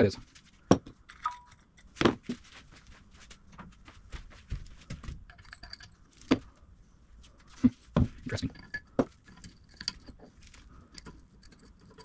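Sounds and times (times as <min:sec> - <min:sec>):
small steel parts clicking: 0:08.4 - 0:12.0.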